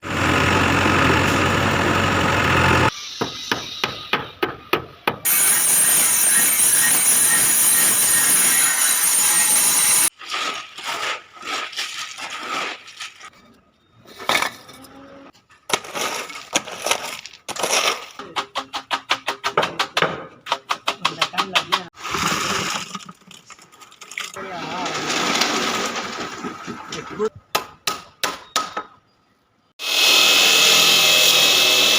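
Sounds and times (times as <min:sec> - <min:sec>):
loud machine noise: 0:00.0 - 0:04.0, 0:05.3 - 0:10.1, 0:29.8 - 0:31.9.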